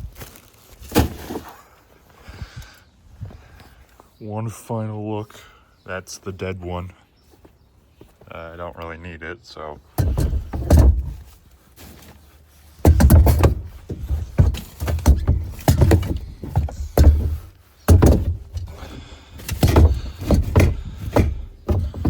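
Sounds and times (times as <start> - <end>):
objects being set down: 0.1 - 1.6, 10.0 - 22.0
loud thumps and knocks: 10.0 - 11.4, 12.8 - 22.0.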